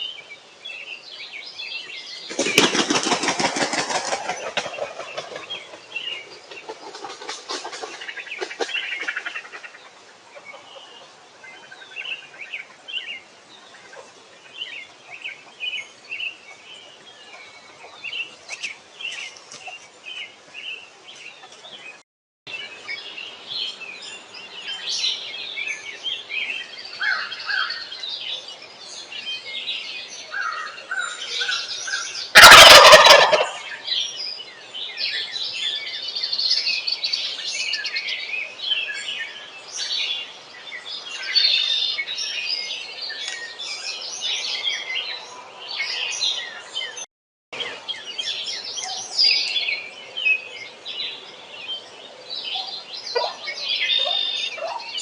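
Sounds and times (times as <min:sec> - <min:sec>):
songbirds chirping and singing: 0:00.0 - 0:55.0
turkey gobbling: 0:32.3 - 0:33.7, 0:53.1 - 0:54.8.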